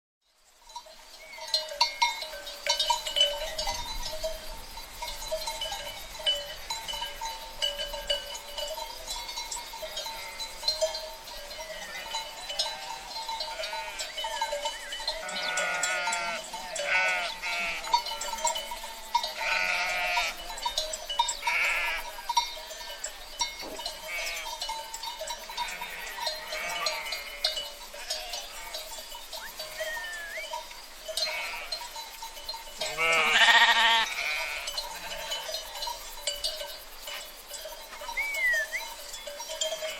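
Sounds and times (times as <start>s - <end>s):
sheep bells clinking: 0.2s - 39.9s
sheep bleating: 10.2s - 10.5s, 11.7s - 14.2s, 15.2s - 18.4s, 19.0s - 20.4s, 21.4s - 22.2s, 24.0s - 24.5s, 25.5s - 28.9s, 29.6s - 30.5s, 31.2s - 31.8s, 32.8s - 35.5s.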